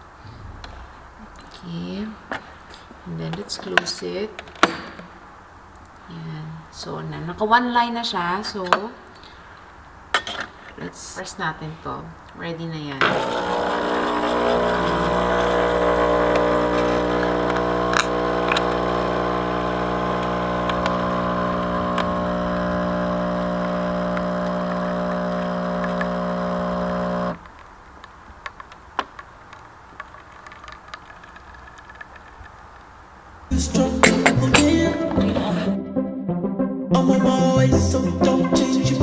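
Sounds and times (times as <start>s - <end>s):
coffee machine pump humming: 13.0s - 27.4s.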